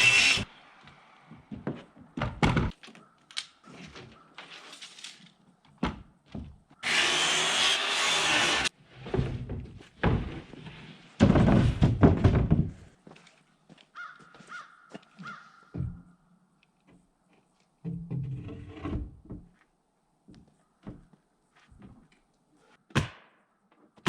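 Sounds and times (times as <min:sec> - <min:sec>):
power tool running: 0:06.8 - 0:08.7.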